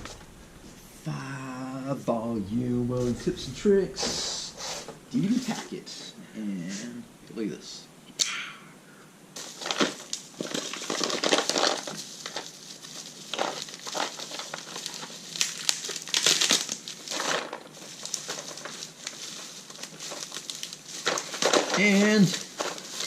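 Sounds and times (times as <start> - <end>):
packaging crinkling and rustling: 9.4 - 23.0.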